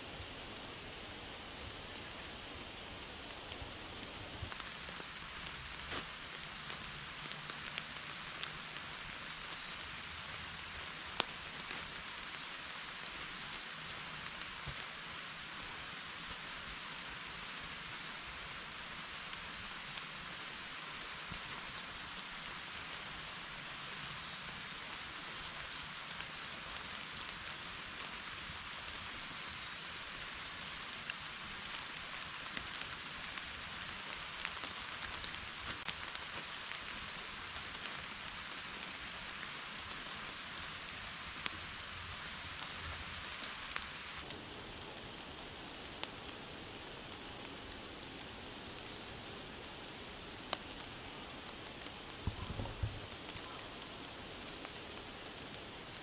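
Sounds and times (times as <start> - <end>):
raindrops ticking: 0.0 - 4.6, 44.2 - 56.0
steady rain hiss: 0.0 - 56.0.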